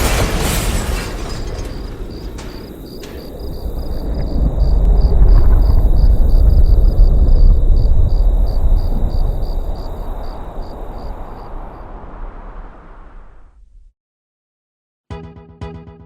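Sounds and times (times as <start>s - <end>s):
crickets chirping: 0.3s - 13.1s
heavy low rumble: 0.9s - 13.9s.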